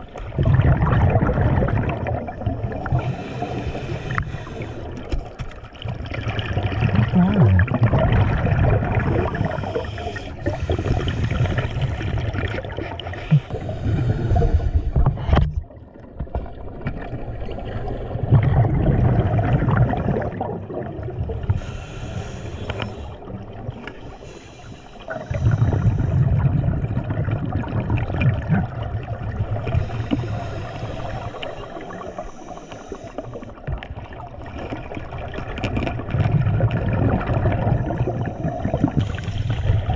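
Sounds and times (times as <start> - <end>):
bubbling exhalations underwater: 0.0 - 4.7, 5.8 - 15.8, 17.5 - 23.8, 25.1 - 32.4, 33.6 - 39.9
hissing regulator inhalations: 2.9 - 5.2, 9.3 - 12.2, 21.5 - 23.3, 24.0 - 26.1, 29.7 - 33.6, 38.4 - 39.9.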